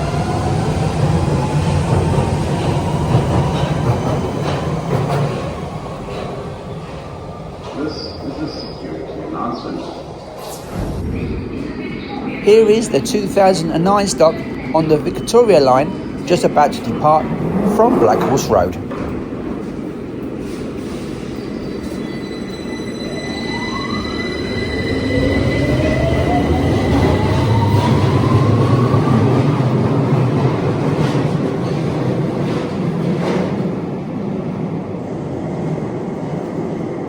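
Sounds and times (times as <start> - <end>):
train rumble: 0.0 - 37.0
electric train traction whine: 21.4 - 30.8.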